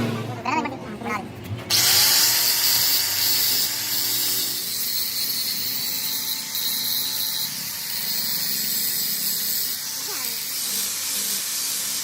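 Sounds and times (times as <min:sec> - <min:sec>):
welding arc hissing: 0:07.8 - 0:12.0.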